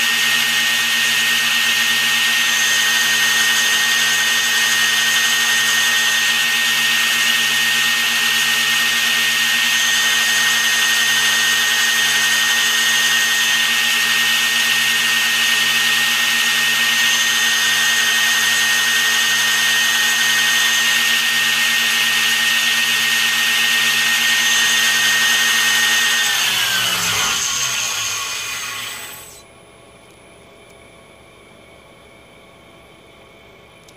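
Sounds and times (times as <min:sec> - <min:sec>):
spindle motor whining: 0:02.2 - 0:29.4.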